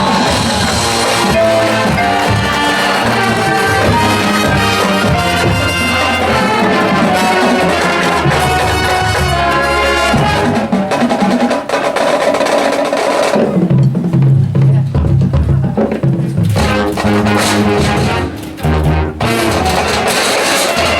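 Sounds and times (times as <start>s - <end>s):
brass playing: 0.0s - 11.0s, 16.4s - 20.9s
marching drums: 0.0s - 20.9s.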